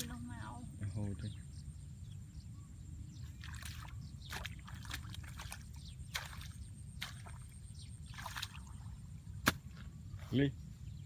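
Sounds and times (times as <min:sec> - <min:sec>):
water splashing and sloshing: 0:03.2 - 0:10.2.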